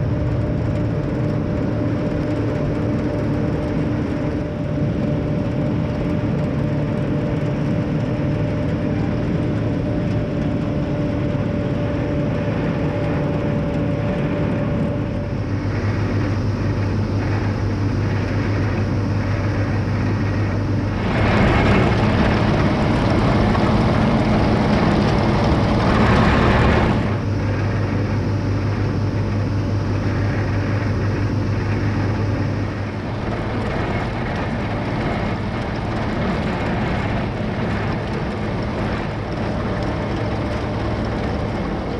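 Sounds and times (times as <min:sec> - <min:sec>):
field machinery working: 0:00.0 - 0:41.9
tractor engine running: 0:00.0 - 0:41.9.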